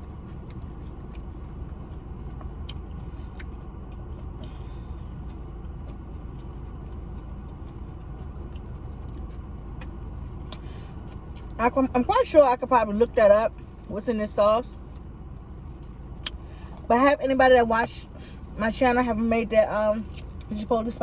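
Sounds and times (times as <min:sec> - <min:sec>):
chewing: 0:00.0 - 0:11.6
low rumble: 0:00.0 - 0:21.0.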